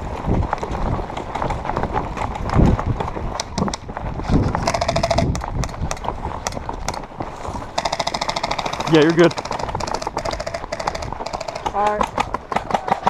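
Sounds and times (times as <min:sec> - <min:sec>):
footsteps running on rough ground: 0:00.0 - 0:13.0
gear rattling: 0:00.2 - 0:13.0
rapid airsoft gun fire: 0:07.8 - 0:13.0.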